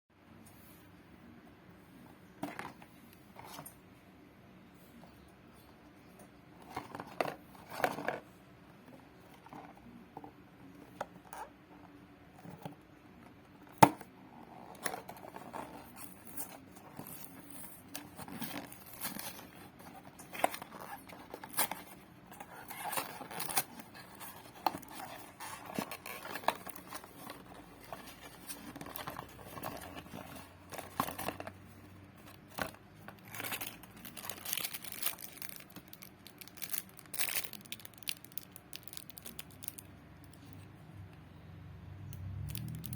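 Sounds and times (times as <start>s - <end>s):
toy packaging crinkling and tearing: 14.8s - 40.6s.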